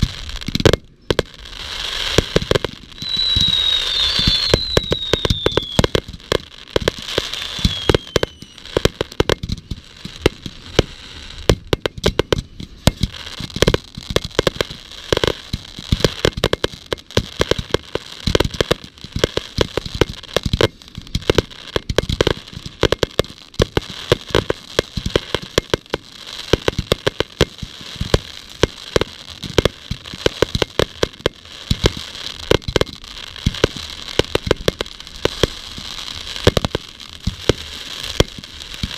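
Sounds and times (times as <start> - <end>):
fireworks bangs and crackling: 0.0 - 38.9
falling firework whistle: 2.9 - 9.0.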